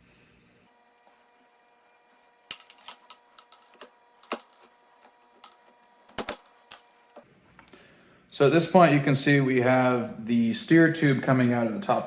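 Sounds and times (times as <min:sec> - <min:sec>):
bicycle parts clicking into place: 0:02.5 - 0:04.6.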